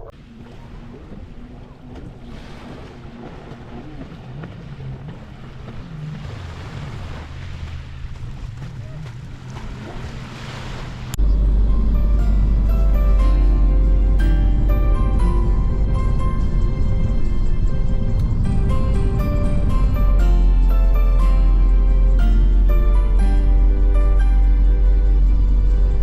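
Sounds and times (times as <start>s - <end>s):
motorboat engine drone: 0.0s - 26.0s
waves: 0.0s - 26.0s
wind: 0.0s - 26.0s
music: 11.2s - 26.0s.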